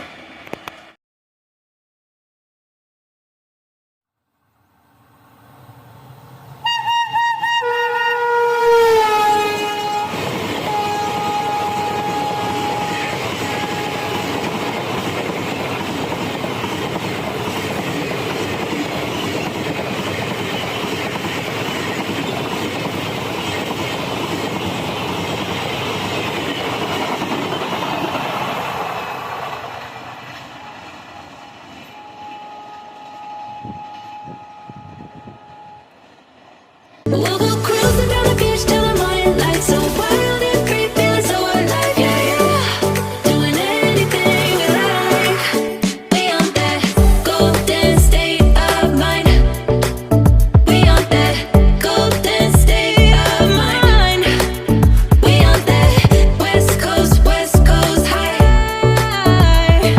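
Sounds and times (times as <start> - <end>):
train coaches rushing and clacking: 5.4 - 59.9
train horn: 6.6 - 15.3, 31.8 - 36.2, 37.6 - 43.8.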